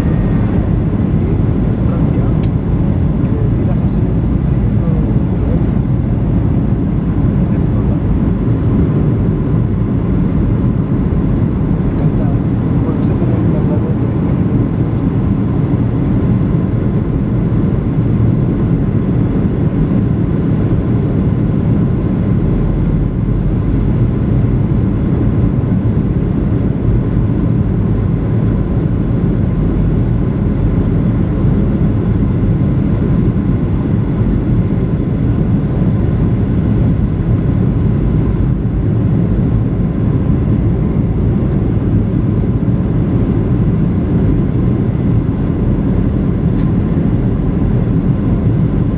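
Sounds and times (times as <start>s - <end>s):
faint whining tones: 0.0s - 2.5s
airplane cabin engine and airflow: 0.0s - 48.9s.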